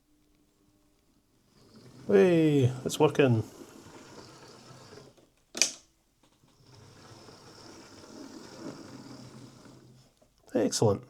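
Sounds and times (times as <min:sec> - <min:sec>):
model train motor humming: 0:01.5 - 0:05.2, 0:06.6 - 0:10.0.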